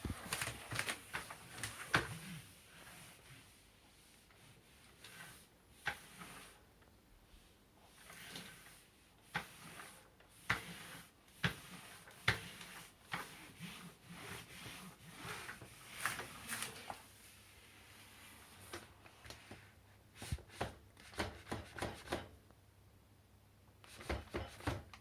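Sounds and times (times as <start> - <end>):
plastic parts rubbing: 8.0 - 17.1.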